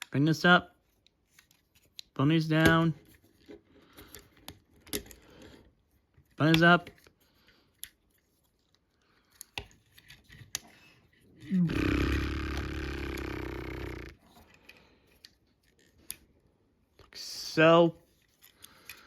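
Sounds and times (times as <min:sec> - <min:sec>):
rough growl-like sound: 0:11.4 - 0:14.2.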